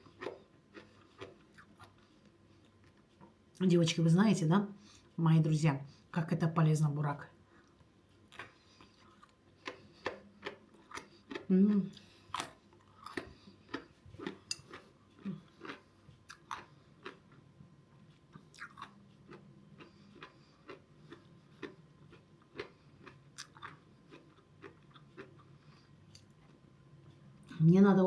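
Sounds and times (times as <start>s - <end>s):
person chewing crunchy food: 0.0s - 3.2s, 7.5s - 26.6s.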